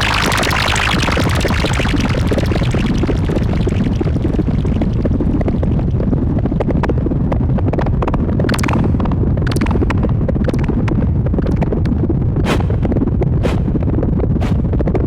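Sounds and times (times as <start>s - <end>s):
distorted synthesizer rumble: 0.0s - 15.0s
crackling clicks: 7.7s - 14.8s.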